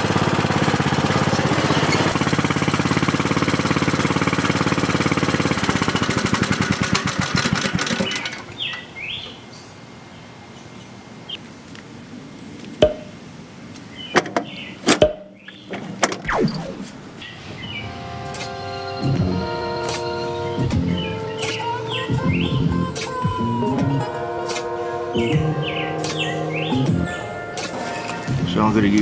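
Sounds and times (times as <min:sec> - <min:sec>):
birds chirping: 0:00.0 - 0:02.7, 0:07.4 - 0:29.0
lawn tractor engine shutting off: 0:00.0 - 0:09.2, 0:25.2 - 0:29.0
sharp knocks: 0:12.8 - 0:13.2, 0:14.2 - 0:16.3.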